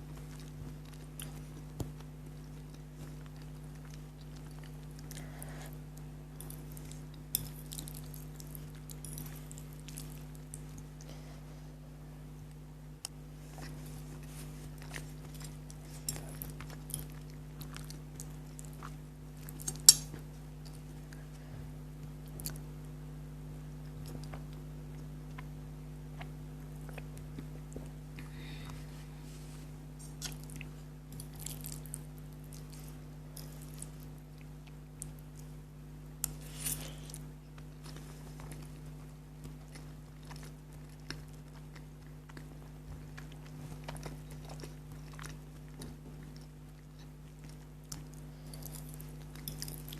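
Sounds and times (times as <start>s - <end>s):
steady low hum: 0.0s - 49.9s
chewing noodles: 36.2s - 49.9s.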